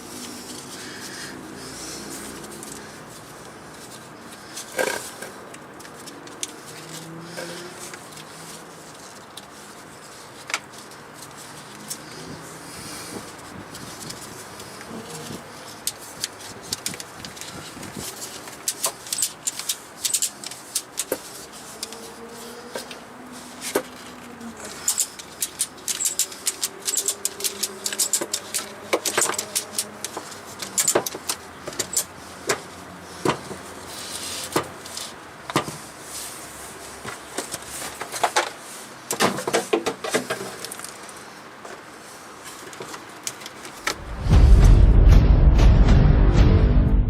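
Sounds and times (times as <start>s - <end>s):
metallic tool clicks and clanks: 18.6s - 21.2s, 24.7s - 32.1s.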